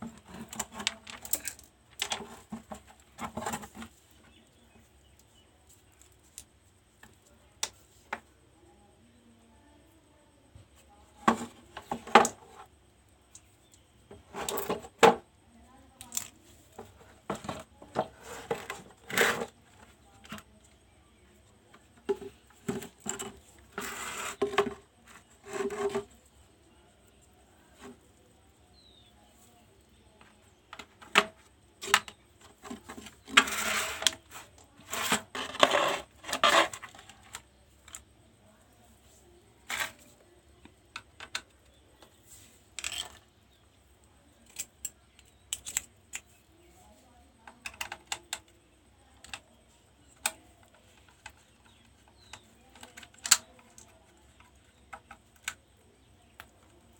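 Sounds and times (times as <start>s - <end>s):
scraping: 0.0s - 5.2s, 16.0s - 20.8s, 21.6s - 26.5s, 30.2s - 38.1s.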